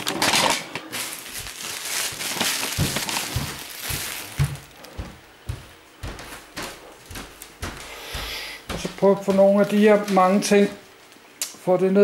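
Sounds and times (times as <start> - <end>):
plastic garbage bags rustling: 0.0 - 5.5, 7.1 - 11.2
dull thumps: 1.4 - 10.0.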